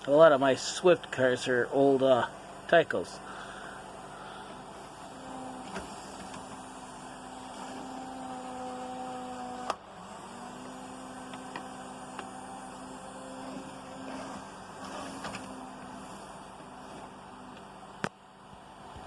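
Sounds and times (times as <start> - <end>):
small electric motor whining: 3.3 - 17.7.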